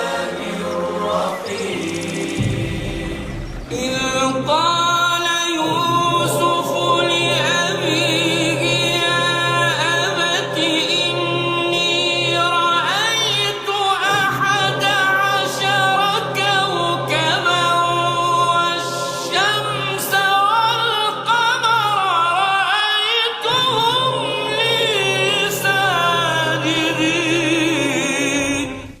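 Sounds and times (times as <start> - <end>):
steady low drone: 0.0 - 5.0
ornamented sung melody: 0.0 - 29.0.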